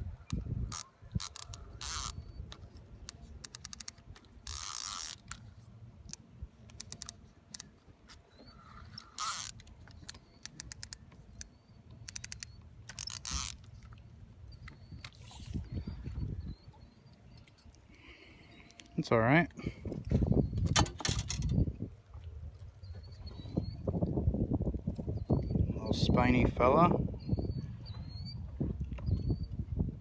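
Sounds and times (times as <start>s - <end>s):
fishing reel drag clicking: 0.3s - 5.5s, 6.1s - 7.7s, 8.8s - 14.0s
line buzzing off spool: 3.4s - 5.4s.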